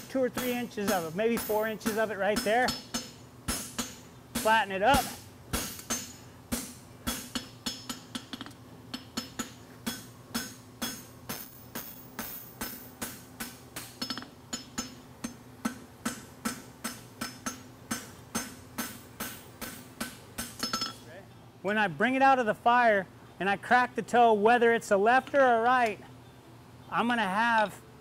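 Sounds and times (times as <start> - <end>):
hammer ringing on anvil: 20.4 - 21.0.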